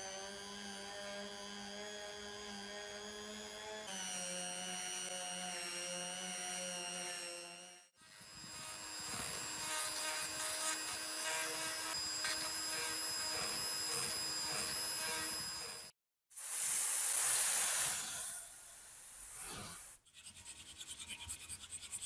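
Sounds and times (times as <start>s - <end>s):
power tool motor whining: 0.0s - 15.9s.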